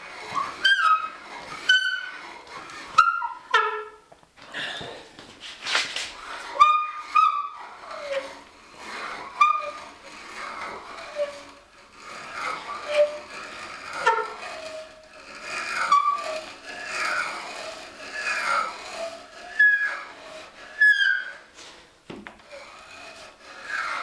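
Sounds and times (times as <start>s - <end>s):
knock: 22.1s - 22.4s.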